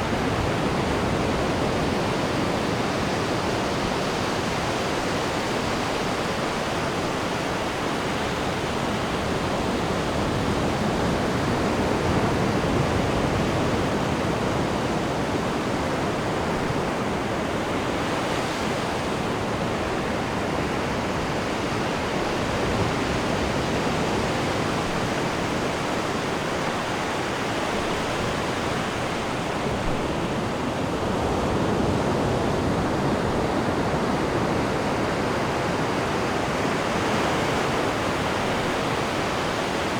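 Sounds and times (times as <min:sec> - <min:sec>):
ocean waves breaking on beach: 0:00.0 - 0:39.9.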